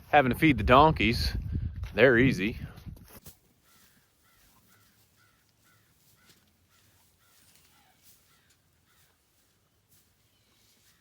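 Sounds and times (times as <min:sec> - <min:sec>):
faint bird calls: 0:03.6 - 0:09.6.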